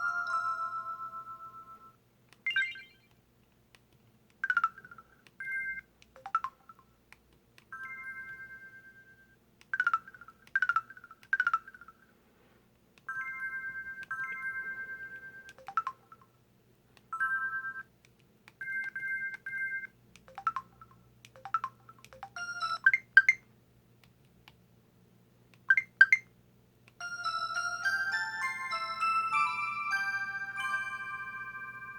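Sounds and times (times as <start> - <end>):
two-note electronic chimes: 0.0 - 3.0, 27.2 - 31.9
chime-like phone melody: 0.0 - 3.1, 4.4 - 6.8, 7.7 - 12.0, 13.1 - 16.2, 17.2 - 17.9, 18.6 - 23.4, 27.0 - 31.9
quick double beeps: 2.5 - 3.1
upward-sweeping blips: 2.5 - 3.2.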